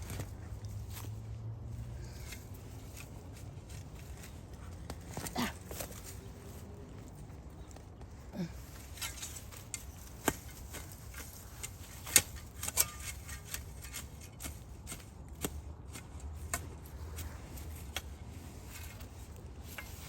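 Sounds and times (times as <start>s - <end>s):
hand tool tapping and scraping soil: 8.8s - 20.0s.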